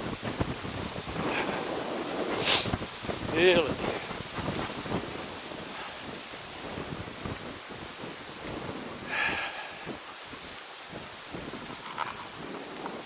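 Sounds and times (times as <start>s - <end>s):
gusty wind on microphone: 0.0s - 13.0s.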